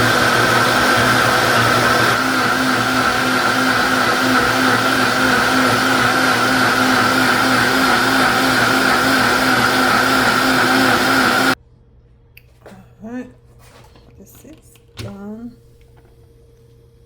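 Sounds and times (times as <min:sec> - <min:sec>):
electric blender motor running: 0:00.0 - 0:11.6.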